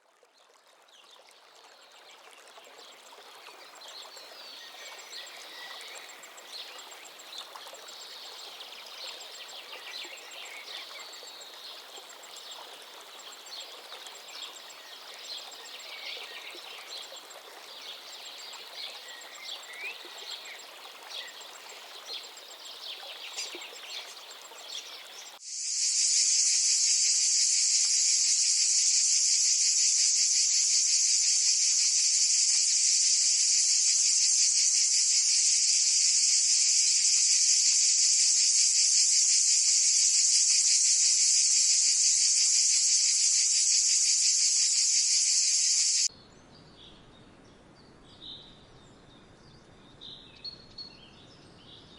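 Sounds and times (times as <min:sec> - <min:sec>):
high-pitched insect chorus: 0:04.0 - 0:46.1
steady background hiss: 0:17.8 - 0:46.1.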